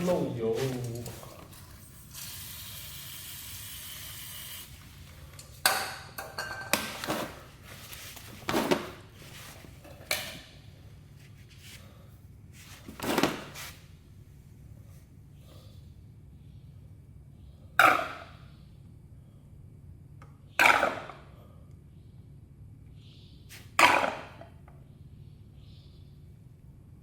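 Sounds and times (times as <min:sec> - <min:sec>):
tools knocking and clattering: 0:05.6 - 0:07.3.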